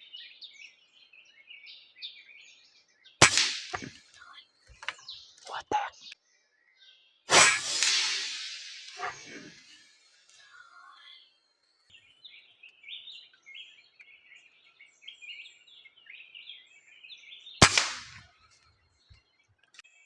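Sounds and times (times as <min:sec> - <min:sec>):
small birds chirping: 0:00.0 - 0:18.3
air rifle shot crack: 0:03.2 - 0:04.1, 0:07.3 - 0:09.9, 0:17.6 - 0:18.3.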